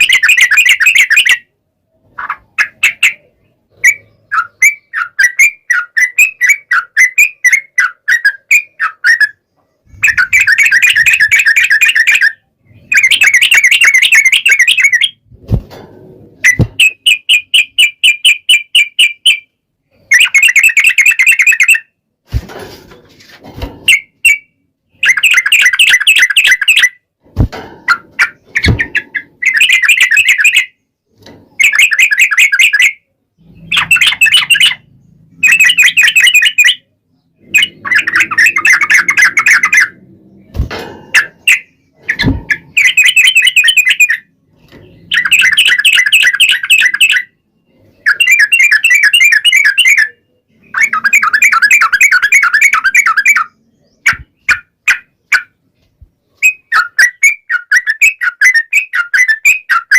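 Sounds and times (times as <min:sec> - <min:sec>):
bulbul chattering song: 0:00.0 - 0:15.3, 0:16.4 - 0:21.9, 0:27.9 - 0:30.8, 0:31.6 - 0:40.2, 0:41.1 - 0:47.4, 0:48.0 - 0:55.6.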